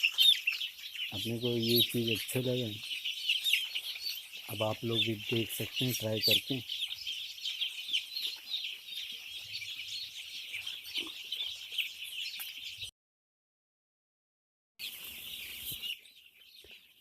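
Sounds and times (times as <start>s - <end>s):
chicks peeping: 0.0s - 12.9s, 14.8s - 17.0s.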